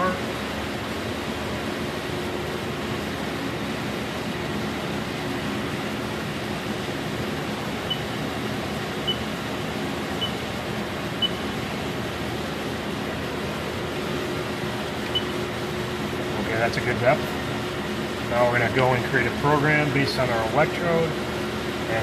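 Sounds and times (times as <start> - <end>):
machine hum and hiss: 0.0 - 22.0
short high beeps: 7.9 - 8.2.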